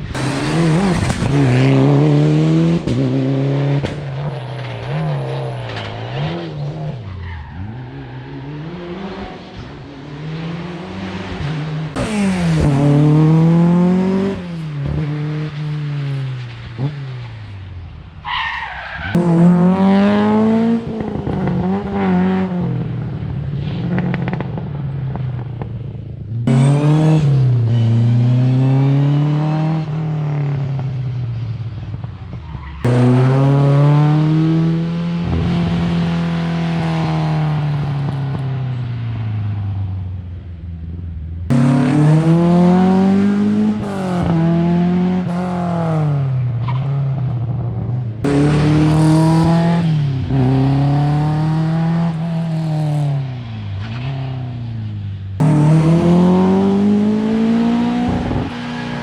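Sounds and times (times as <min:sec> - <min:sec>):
rally cars passing revving: 0:00.0 - 0:59.0.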